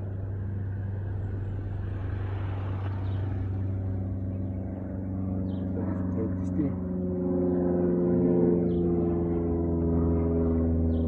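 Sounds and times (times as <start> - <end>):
passing road vehicle: 0.0 - 5.8
steady low hum: 0.0 - 11.0.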